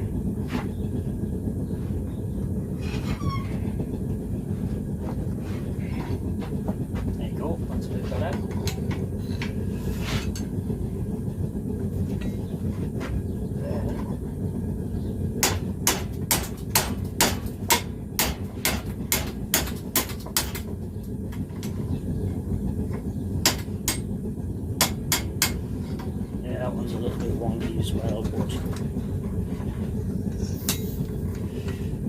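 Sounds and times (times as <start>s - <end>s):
gas forge roaring: 0.0s - 32.0s
hammer striking hot iron on anvil: 15.4s - 20.7s, 23.4s - 24.1s, 24.8s - 26.1s, 30.7s - 30.9s.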